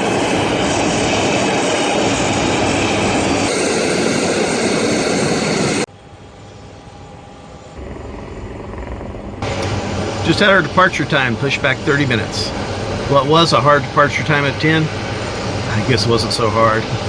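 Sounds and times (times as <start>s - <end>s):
aircraft engines running: 0.0s - 17.0s
low background hum: 5.9s - 17.0s.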